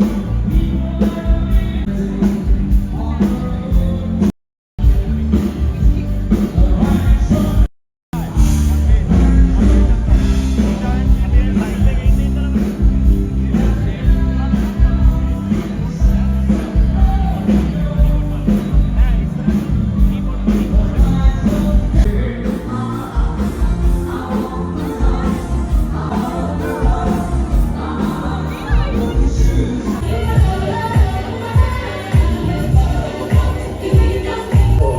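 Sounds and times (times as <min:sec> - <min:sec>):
band music with heavy bass: 0:00.0 - 0:34.9
person singing: 0:20.3 - 0:34.9.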